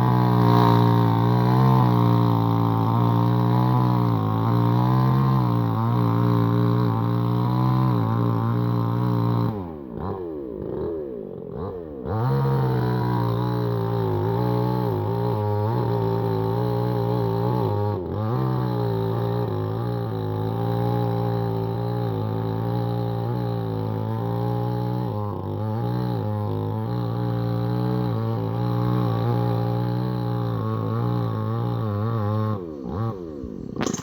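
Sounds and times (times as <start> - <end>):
engine droning hum: 29.9 - 34.0.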